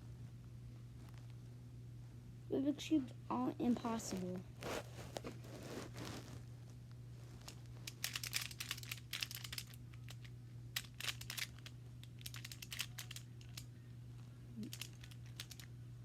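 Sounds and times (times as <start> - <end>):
low electrical hum: 0.0 - 16.0
plastic puzzle cube clicking: 7.9 - 10.2, 10.8 - 13.6, 14.7 - 15.6.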